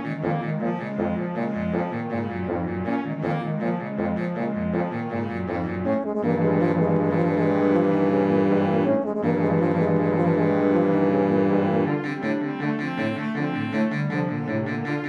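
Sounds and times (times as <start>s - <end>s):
low bass instrumental music: 0.0s - 15.0s.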